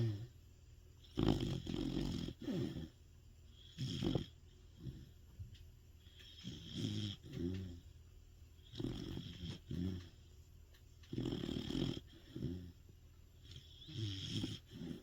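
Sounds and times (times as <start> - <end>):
dog snoring loudly: 0.0 - 0.3, 1.0 - 3.0, 3.6 - 5.2, 6.2 - 7.8, 8.6 - 10.2, 11.1 - 12.8, 13.4 - 15.0.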